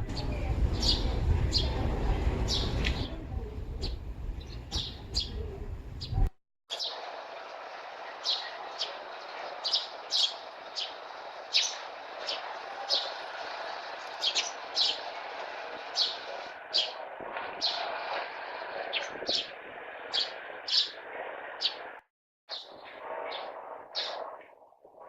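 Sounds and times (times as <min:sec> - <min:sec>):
low rumble: 0:00.0 - 0:06.3
sparrows chirping: 0:00.0 - 0:24.4.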